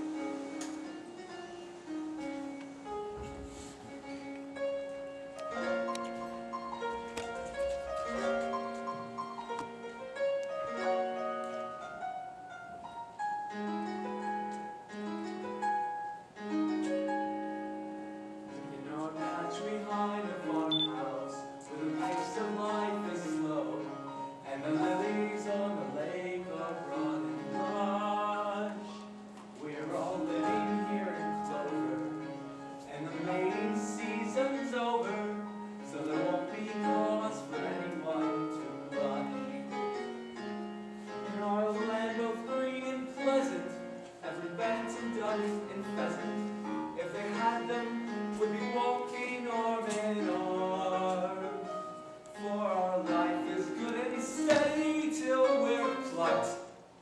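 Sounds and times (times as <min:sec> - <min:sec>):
instrumental accompaniment: 0:00.0 - 0:56.9
piano playing: 0:00.0 - 0:57.0
person singing: 0:18.5 - 0:40.0, 0:41.1 - 0:56.8.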